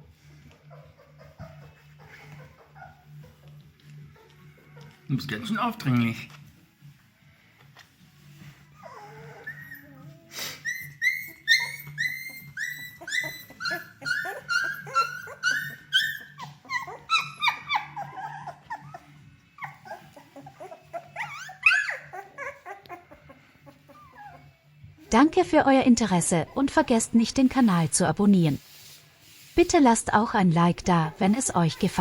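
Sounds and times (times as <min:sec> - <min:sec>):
puppies whining: 0:00.0 - 0:05.1, 0:08.2 - 0:24.9.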